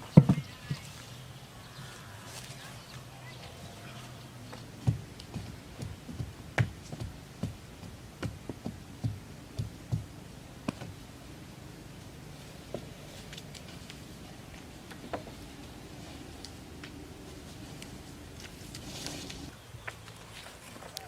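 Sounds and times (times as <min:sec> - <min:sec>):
knocks and taps of building work: 0:04.5 - 0:10.1.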